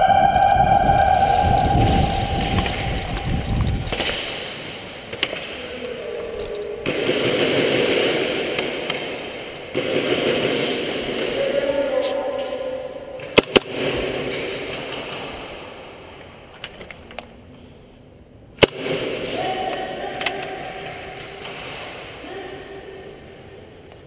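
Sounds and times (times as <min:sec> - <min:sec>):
siren winding down: 0:00.0 - 0:04.1
noise: 0:00.0 - 0:24.0.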